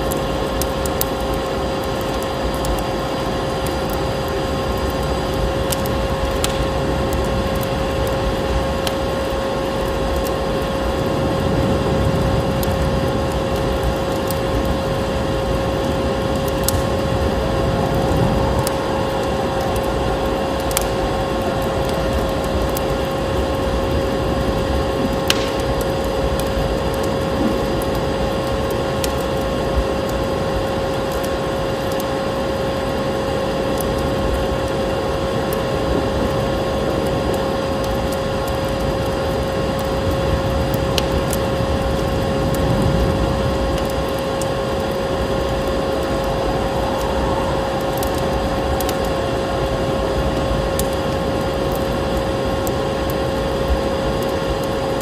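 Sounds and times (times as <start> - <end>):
fire crackling and popping: 0.0 - 55.0
storm wind rushing: 10.8 - 28.9, 40.2 - 52.6.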